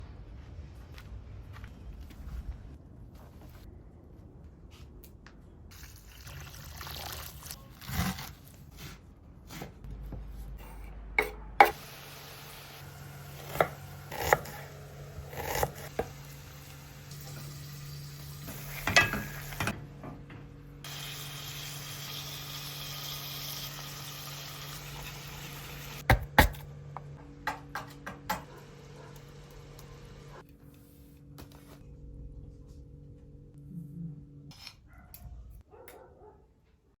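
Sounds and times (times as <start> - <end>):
water running and pouring: 5.7 - 7.6
utensils clinking against pots: 18.5 - 19.8.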